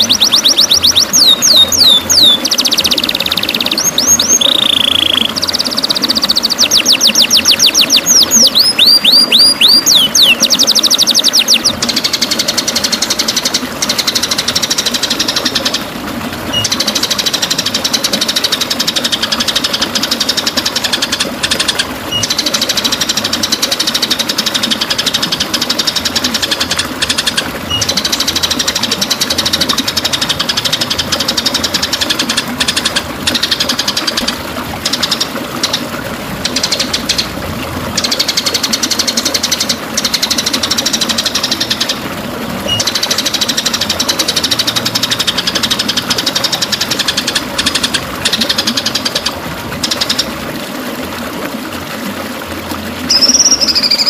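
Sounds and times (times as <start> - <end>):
bird whistling song: 0.0 - 11.8, 16.5 - 16.8, 27.7 - 28.0, 42.7 - 43.6, 53.1 - 54.0.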